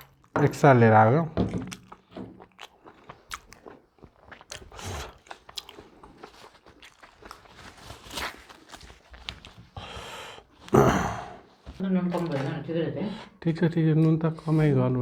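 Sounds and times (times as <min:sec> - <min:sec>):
person biting and chewing food: 0:01.6 - 0:09.8.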